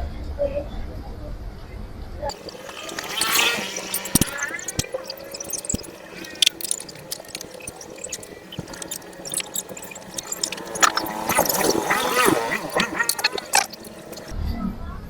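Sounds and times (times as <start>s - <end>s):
wavering whine: 2.3s - 14.3s.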